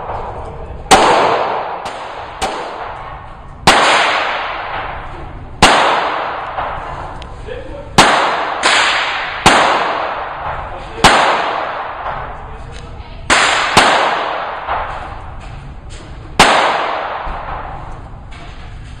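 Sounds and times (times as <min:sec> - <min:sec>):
pistol shots echoing: 0:00.0 - 0:07.2, 0:07.9 - 0:12.5, 0:13.3 - 0:15.5, 0:16.4 - 0:18.1.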